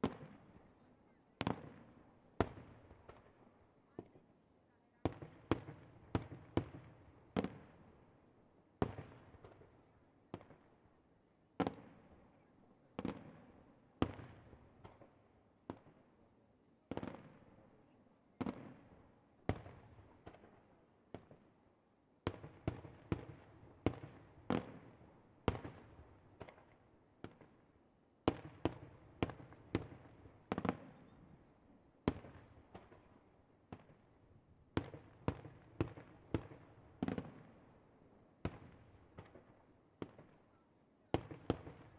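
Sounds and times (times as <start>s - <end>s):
fireworks bangs with rumbling echo: 1.4s - 3.4s, 13.0s - 15.1s, 28.3s - 31.2s, 34.7s - 37.6s, 41.2s - 41.9s.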